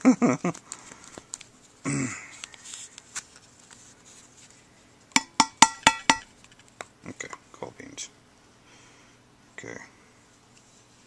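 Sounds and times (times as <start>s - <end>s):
person grunting: 1.8s - 2.3s.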